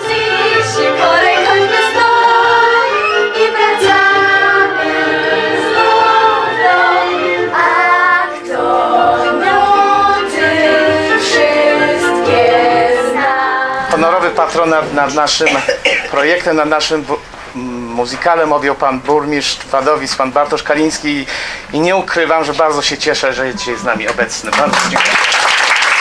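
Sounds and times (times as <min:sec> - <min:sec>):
choir singing: 0:00.0 - 0:15.6.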